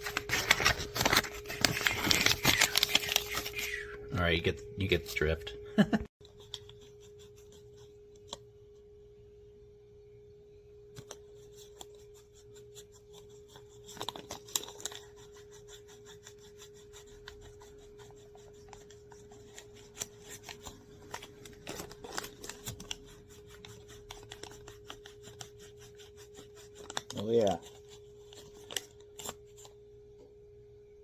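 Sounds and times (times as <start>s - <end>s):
steady hum: 0.0s - 13.5s.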